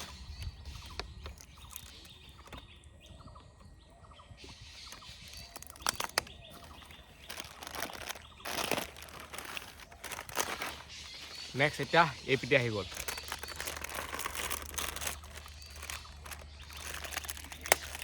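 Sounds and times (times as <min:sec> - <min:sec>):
wrapper rustling and crinkling: 0:00.0 - 0:02.6, 0:04.9 - 0:18.0.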